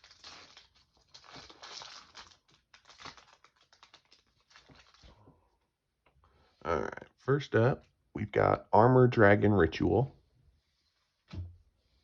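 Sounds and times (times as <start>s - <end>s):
foil wrapper crinkling: 0.0s - 5.3s.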